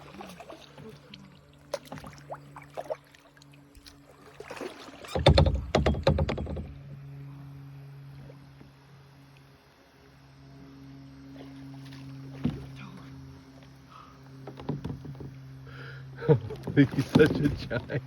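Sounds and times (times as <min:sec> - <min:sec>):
water splashing and sloshing: 0:00.0 - 0:06.8, 0:11.2 - 0:18.0
steady low hum: 0:00.0 - 0:18.0.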